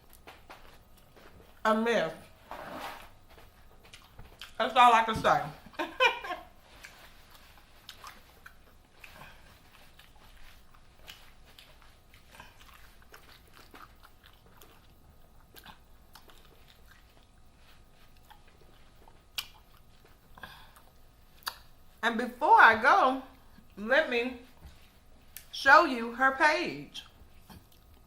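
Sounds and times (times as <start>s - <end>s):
person chewing food: 0.0s - 1.6s, 2.3s - 4.6s, 5.6s - 22.0s, 23.3s - 23.8s, 24.5s - 25.6s, 27.0s - 28.0s.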